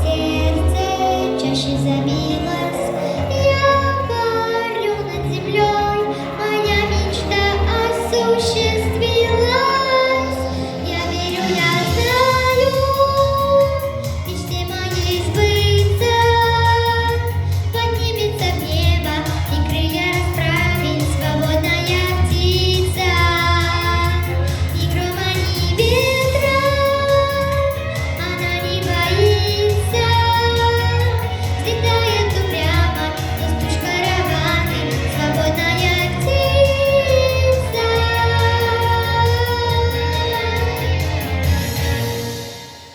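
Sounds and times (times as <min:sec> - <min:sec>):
young woman singing: 0:00.0 - 0:41.0
backing track with bass line: 0:11.3 - 0:42.3.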